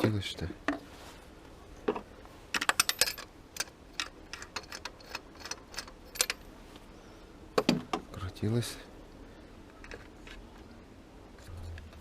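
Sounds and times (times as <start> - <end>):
hand tools clinking on metal: 2.6 - 6.5.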